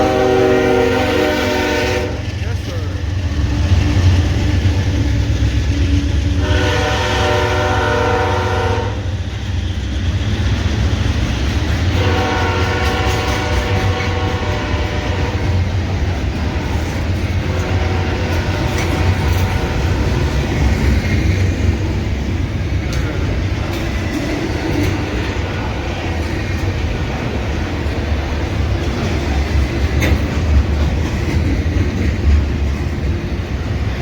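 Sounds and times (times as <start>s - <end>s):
train air horn blasts: 0.0s - 2.3s, 6.4s - 9.2s, 11.9s - 15.6s, 17.5s - 20.2s
locomotive engines rumbling: 0.0s - 34.0s.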